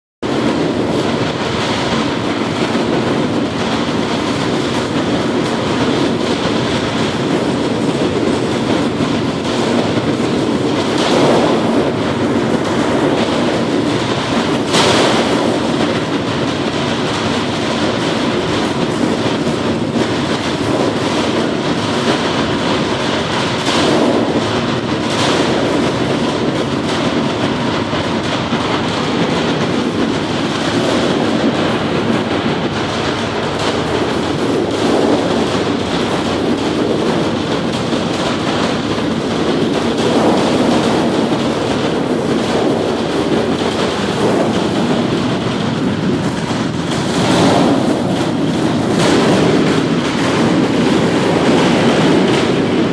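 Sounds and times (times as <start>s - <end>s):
aircraft engine roaring: 18.2s - 52.9s.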